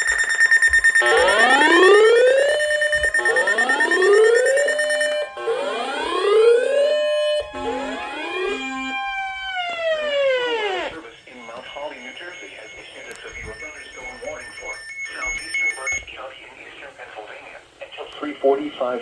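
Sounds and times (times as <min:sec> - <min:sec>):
rising siren alert tone: 0:00.0 - 0:12.2
steady high tone: 0:00.0 - 0:16.0.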